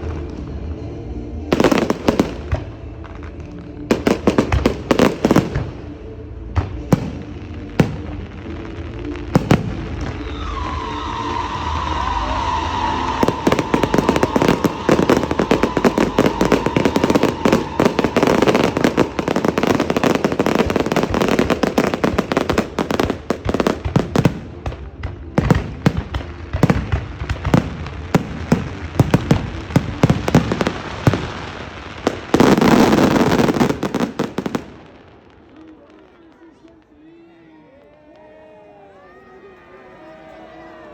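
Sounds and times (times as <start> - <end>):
fireworks crackling and banging: 0.0 - 37.1
fireworks whistle: 9.4 - 24.4, 25.5 - 35.0.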